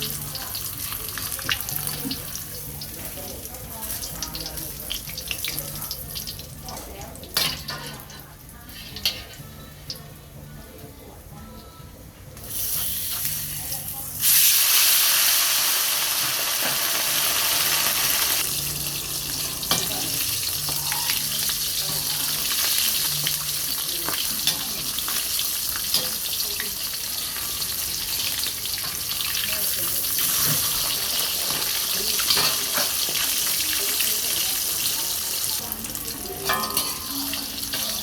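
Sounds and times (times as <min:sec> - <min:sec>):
food sizzling in hot oil: 0:12.4 - 0:38.0.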